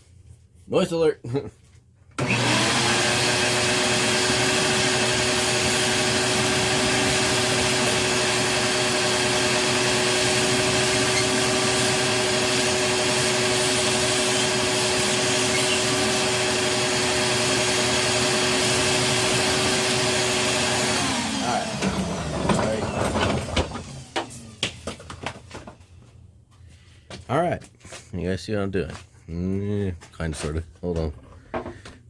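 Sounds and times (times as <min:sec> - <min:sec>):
small electric motor running: 0:02.2 - 0:22.2.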